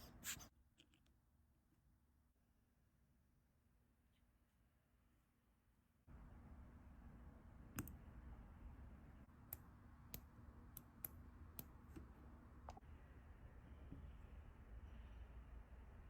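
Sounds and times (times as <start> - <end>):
faint steady hum: 5.9 - 16.0.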